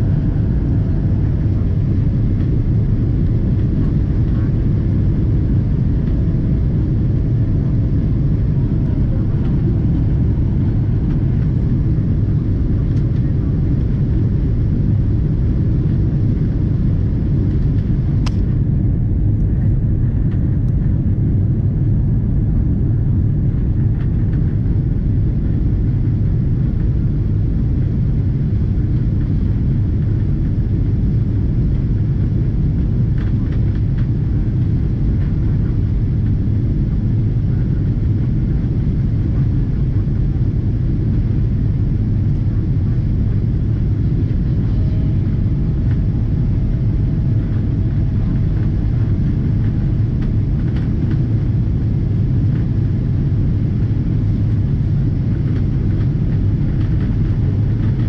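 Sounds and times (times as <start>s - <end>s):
airplane cabin engine rumble: 0.0s - 58.0s.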